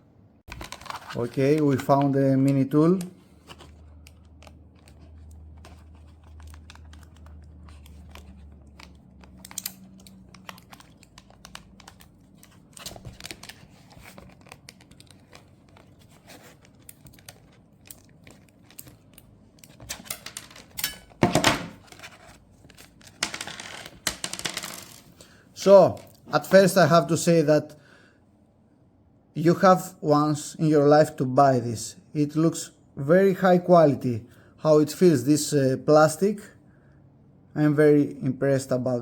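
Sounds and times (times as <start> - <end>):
plastic parts clicking and tapping: 0.5 - 22.1
packaging crinkling: 2.8 - 20.8.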